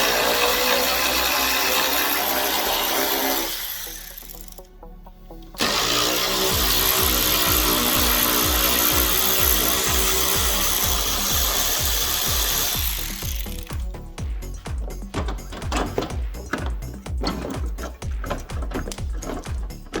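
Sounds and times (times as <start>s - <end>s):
power tool on metal: 0.0s - 4.6s, 5.6s - 13.8s
background music with steady beat: 0.0s - 20.0s.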